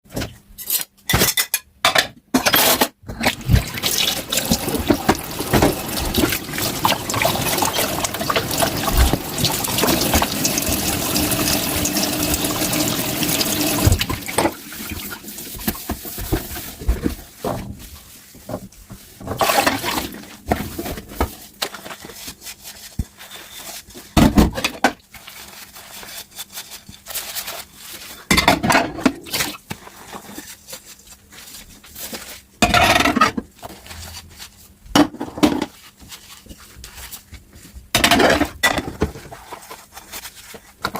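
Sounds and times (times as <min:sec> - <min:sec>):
water splashes: 0:03.3 - 0:15.2
tap water running into sink: 0:03.3 - 0:15.8.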